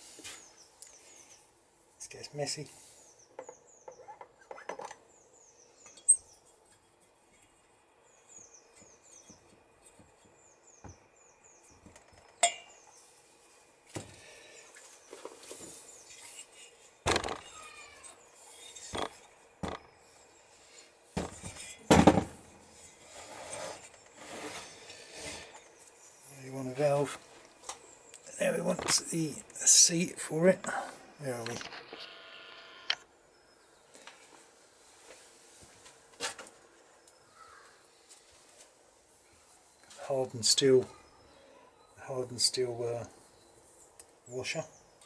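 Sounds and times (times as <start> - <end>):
metal scraping: 21.2 - 21.9, 22.7 - 25.5.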